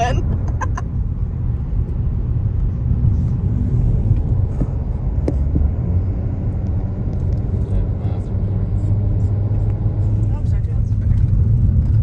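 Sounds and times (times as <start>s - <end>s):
vehicle interior rumble: 0.0s - 12.0s.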